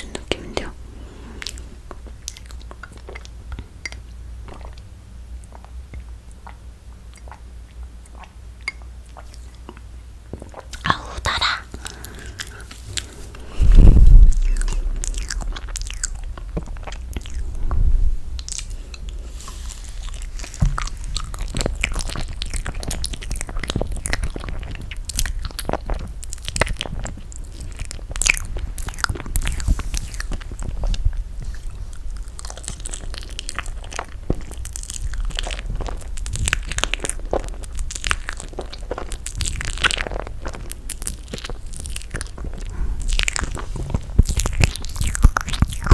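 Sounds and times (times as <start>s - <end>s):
close chewing with mouth clicks: 1.4s - 17.6s, 18.4s - 45.9s
heavy low thump: 13.3s - 16.8s, 17.4s - 18.4s, 20.5s - 21.4s.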